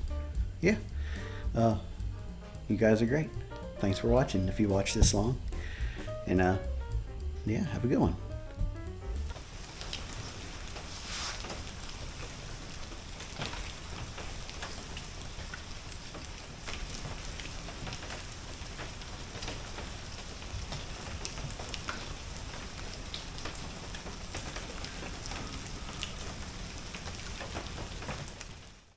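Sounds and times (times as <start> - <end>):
rain falling: 0.0 - 28.9
drops ticking on hard surface: 0.4 - 10.9.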